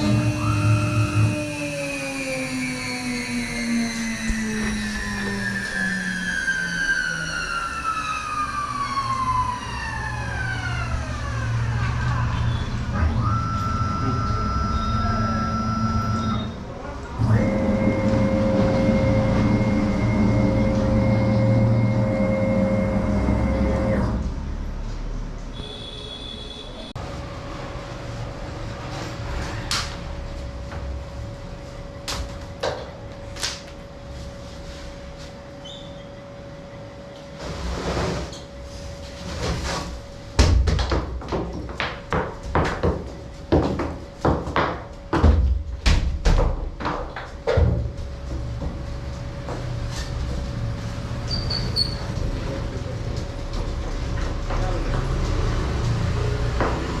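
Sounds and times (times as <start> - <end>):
cnc router whine: 0.0 - 16.6, 17.2 - 24.3
steady hum: 0.0 - 25.3.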